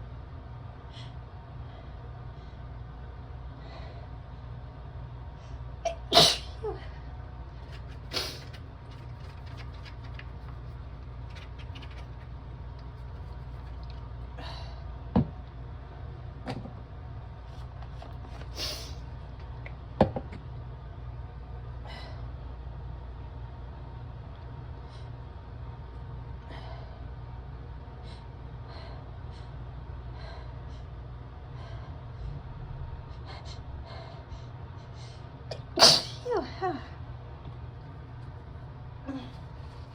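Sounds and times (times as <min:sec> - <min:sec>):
steady low hum: 0:00.0 - 0:39.9
person sneezing: 0:05.9 - 0:06.8, 0:35.5 - 0:36.6.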